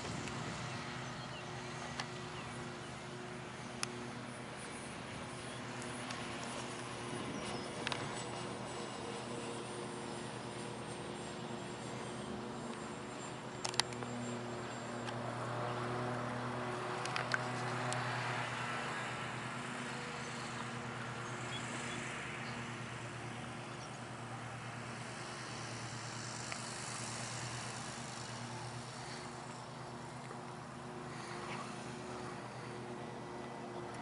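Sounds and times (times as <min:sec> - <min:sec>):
model plane engine droning: 0:00.0 - 0:34.0
sharp clicks: 0:13.6 - 0:14.1.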